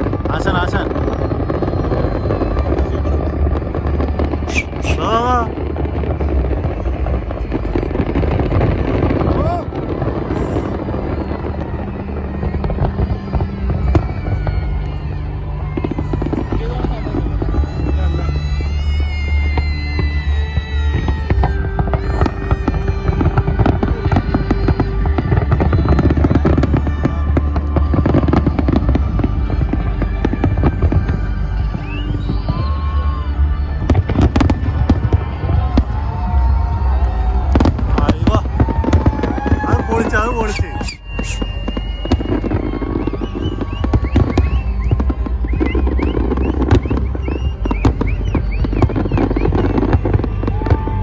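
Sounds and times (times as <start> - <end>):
fireworks whistling: 0.0 - 15.0, 16.2 - 35.8, 37.5 - 51.0
music with heavy bass: 0.0 - 40.3, 40.9 - 51.0
fireworks bangs and crackles: 0.0 - 51.0
low rumble: 0.0 - 51.0.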